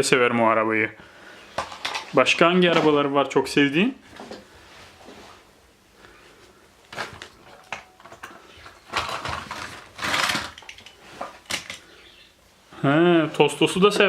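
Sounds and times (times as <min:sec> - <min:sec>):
toy cars rustling and clattering: 0:01.6 - 0:02.9, 0:06.9 - 0:11.9
toy cars clicking and knocking: 0:07.7 - 0:11.8.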